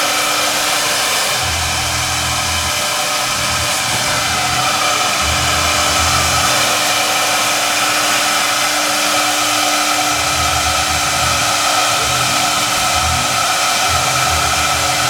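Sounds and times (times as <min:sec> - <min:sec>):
foam router spindle whirring: 0:00.0 - 0:15.0
low rumble: 0:01.4 - 0:06.8.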